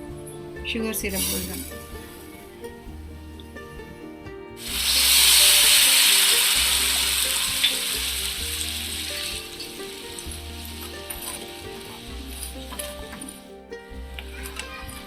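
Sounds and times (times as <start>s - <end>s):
hot pan sizzling: 4.6s - 13.3s.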